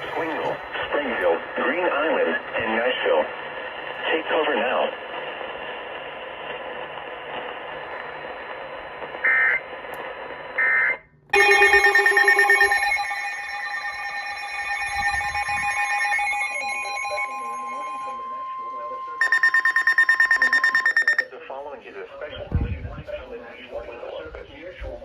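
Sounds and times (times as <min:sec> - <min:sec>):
radio hiss: 0:00.0 - 0:10.5
pulsing electronic alert tone: 0:11.4 - 0:21.2
warbling data tones: 0:11.4 - 0:21.2.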